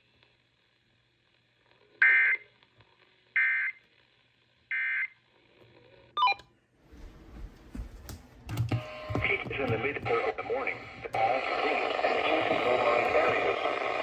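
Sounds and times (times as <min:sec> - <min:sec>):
radio noise hiss: 0:08.8 - 0:14.0.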